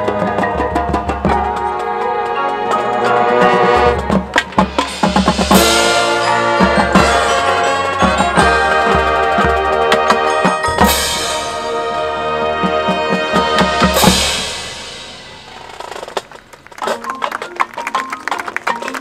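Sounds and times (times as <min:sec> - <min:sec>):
brass chord: 0:00.0 - 0:15.8
drumline beat: 0:00.0 - 0:19.0
cymbal crashes: 0:04.5 - 0:07.4, 0:10.7 - 0:16.2.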